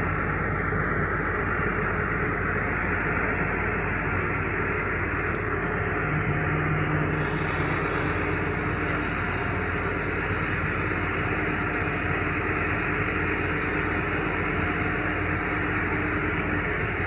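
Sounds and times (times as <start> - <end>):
excavator diesel engine running: 0.0 - 17.0.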